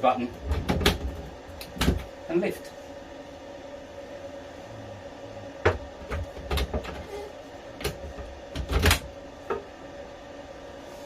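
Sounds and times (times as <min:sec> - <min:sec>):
toilet seat clicks and knocks: 0:00.5 - 0:01.2.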